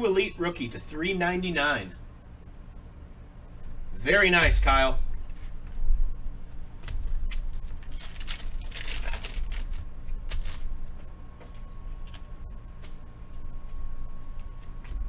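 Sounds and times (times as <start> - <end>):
foil wrapper crinkling: 6.8 - 11.1.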